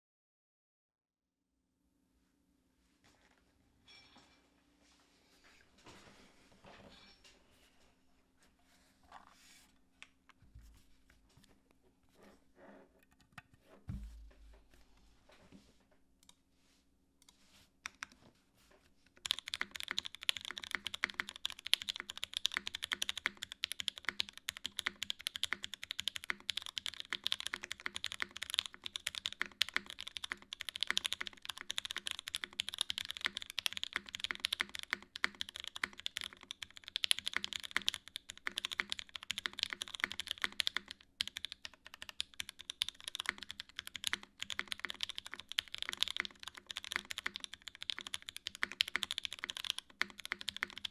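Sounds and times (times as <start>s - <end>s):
fast mechanical keyboard typing: 19.2s - 50.9s.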